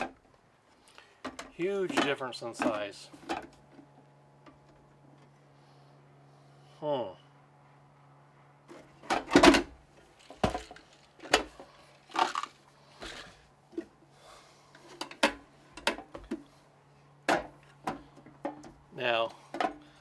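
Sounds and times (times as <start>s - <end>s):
metal toolboxes clunking and rattling: 0.0s - 0.2s, 1.2s - 3.9s, 8.7s - 13.9s, 14.8s - 16.5s.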